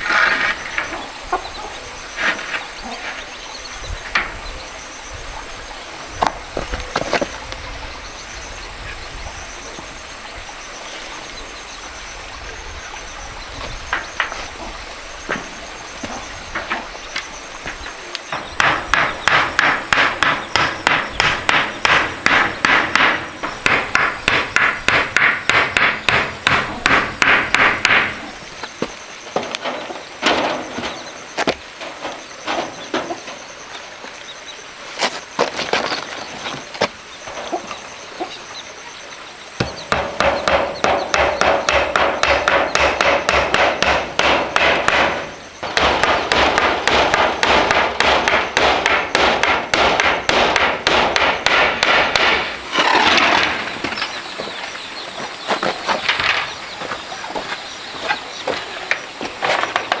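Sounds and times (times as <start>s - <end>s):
hammering blows: 13.6s - 33.5s, 39.5s - 60.0s.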